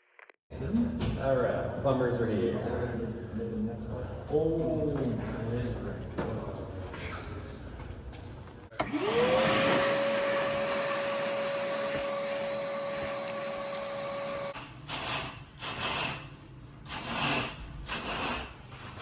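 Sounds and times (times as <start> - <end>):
small electric motor whining: 8.8 - 14.6.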